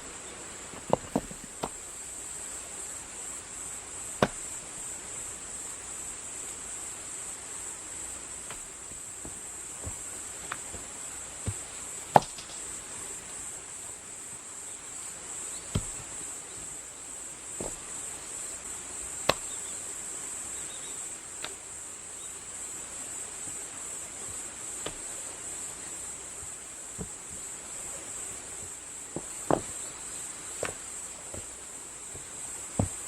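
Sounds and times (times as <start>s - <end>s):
insects chorus: 0.0s - 33.0s
sharp irregular knocks: 0.8s - 1.8s, 4.2s - 4.6s, 8.4s - 12.8s, 15.7s - 16.7s, 17.6s - 17.9s, 19.2s - 19.6s, 24.8s - 25.1s, 28.6s - 29.9s, 30.6s - 31.5s, 32.1s - 33.0s.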